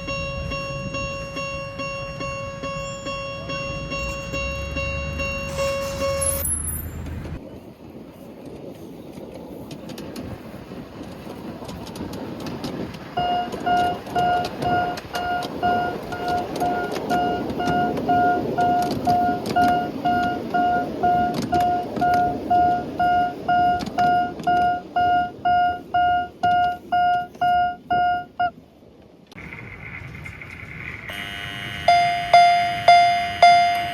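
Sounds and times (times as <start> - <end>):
electronic level crossing bell: 0.0 - 7.0, 13.2 - 28.5, 31.1 - 33.9.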